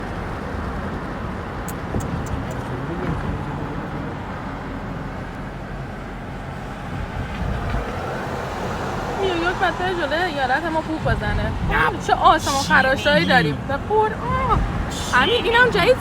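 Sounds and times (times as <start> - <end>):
traffic rumble: 0.0 - 16.0
light high ticks: 1.7 - 2.7.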